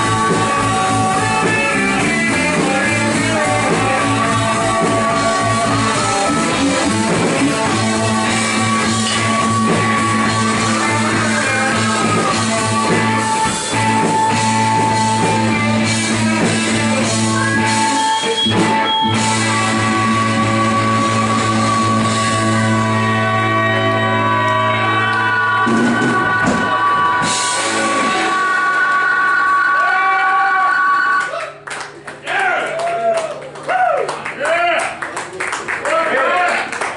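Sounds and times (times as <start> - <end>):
electric guitar chords ringing: 0.0 - 28.8
drum kit: 0.0 - 30.2
rock band playing: 0.0 - 30.2.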